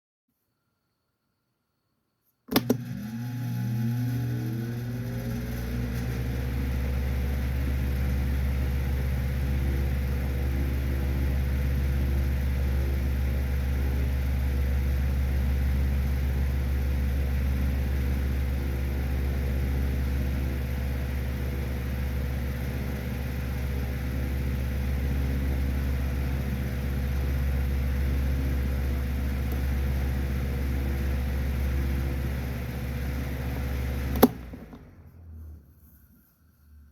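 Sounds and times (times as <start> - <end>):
fan switch click: 2.5 - 2.8, 34.1 - 34.5
fan motor whining and humming: 2.5 - 35.1.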